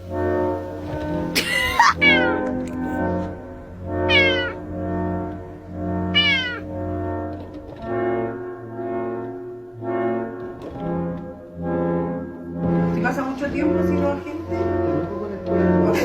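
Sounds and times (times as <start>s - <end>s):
background music: 0.0s - 16.0s
cat meowing: 1.4s - 2.5s, 4.0s - 4.6s, 6.1s - 6.7s.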